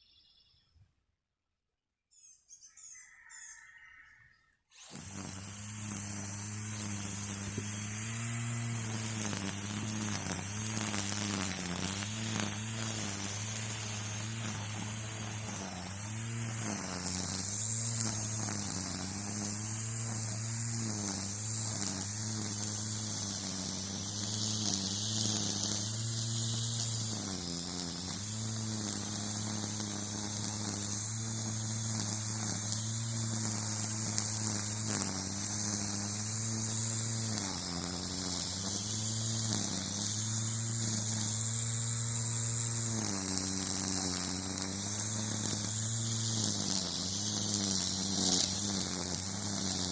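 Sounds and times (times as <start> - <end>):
string trimmer running: 4.7 - 49.9.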